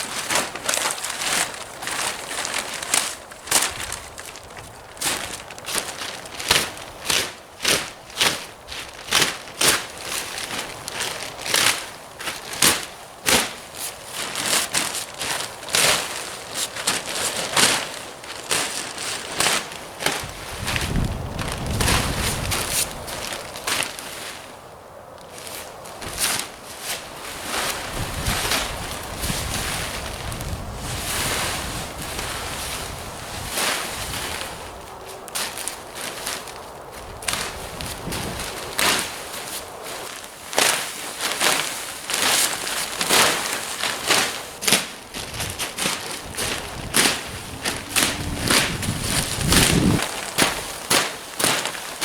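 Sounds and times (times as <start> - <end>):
plastic sheet crinkling and rustling: 0.0 - 24.6, 25.2 - 52.0
wind buffeting microphone: 1.2 - 11.5, 20.0 - 23.7, 27.2 - 40.2, 44.6 - 51.5.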